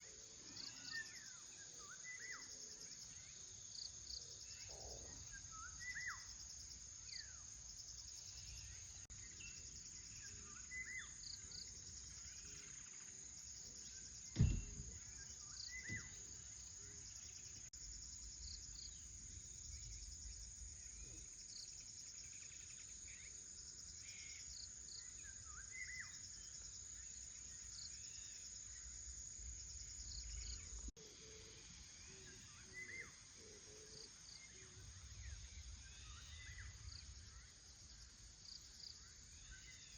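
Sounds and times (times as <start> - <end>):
insect chorus: 0.0 - 39.9
sharp thump: 14.3 - 16.2.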